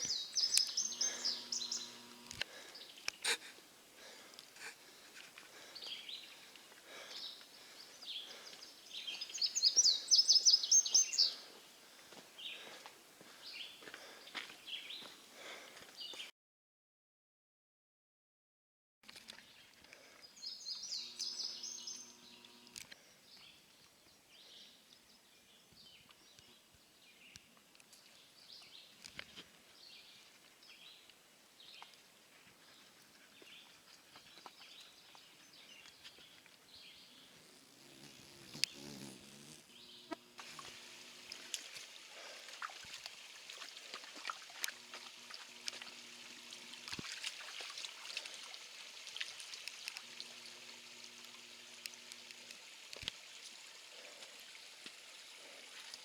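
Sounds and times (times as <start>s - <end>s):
stream running water: 0.0s - 16.2s, 19.1s - 56.0s
bird calls: 0.0s - 16.3s, 20.3s - 22.6s.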